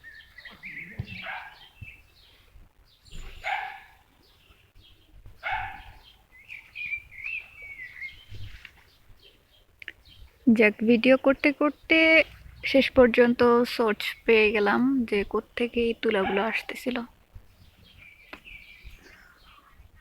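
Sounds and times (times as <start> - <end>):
small birds chirping: 0.0 - 20.0
dog barking: 1.1 - 1.8, 3.4 - 4.0, 5.4 - 6.0, 16.2 - 16.8.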